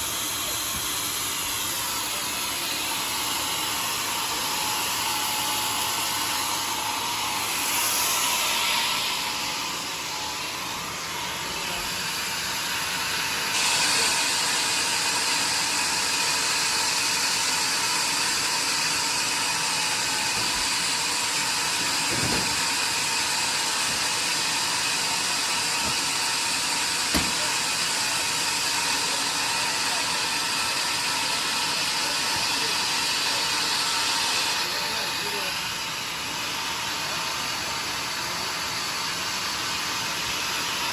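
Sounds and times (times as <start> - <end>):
sawmill cutting a log: 0.0 - 40.9
brief knocks: 27.1 - 27.5.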